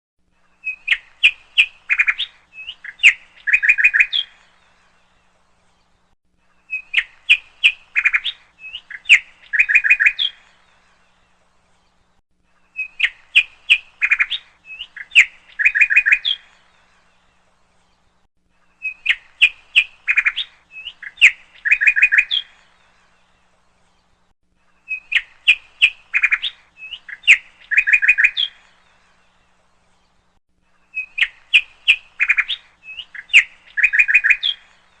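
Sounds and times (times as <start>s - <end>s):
bird chirping and trilling: 0.6s - 5.0s, 6.6s - 11.0s, 12.6s - 18.1s, 18.7s - 24.1s, 24.7s - 30.2s, 30.8s - 35.0s.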